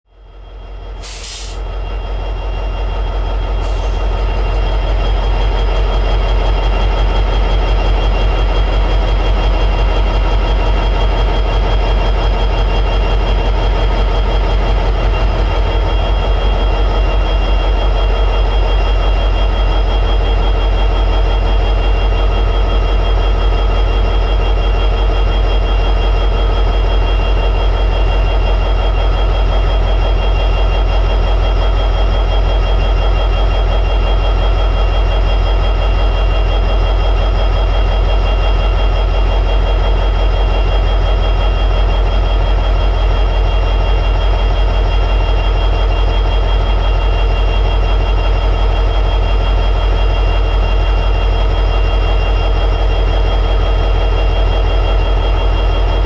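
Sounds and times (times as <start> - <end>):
diesel locomotive engine idling: 0.1 - 56.0
short air hiss: 1.0 - 1.6.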